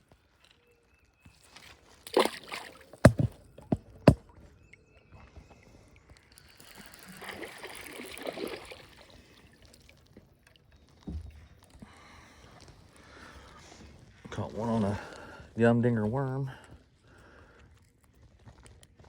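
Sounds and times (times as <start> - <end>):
paddle splashing water: 2.0 - 4.4, 6.5 - 11.0
water sloshing: 2.0 - 4.5, 5.4 - 11.8
knocks against kayak: 3.0 - 4.2.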